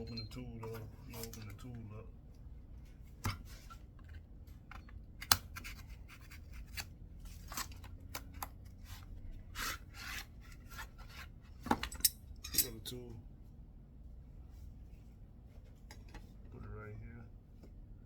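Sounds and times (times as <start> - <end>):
metal tool clicking and scraping: 11.8 - 12.8.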